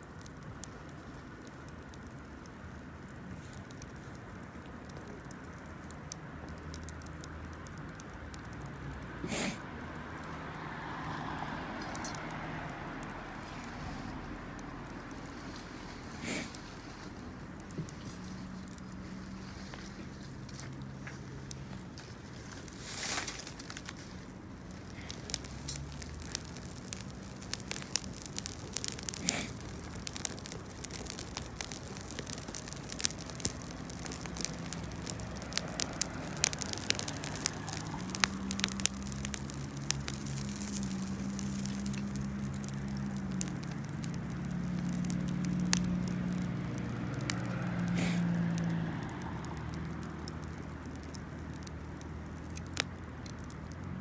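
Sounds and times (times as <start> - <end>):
campfire crackling: 0.0 - 54.0.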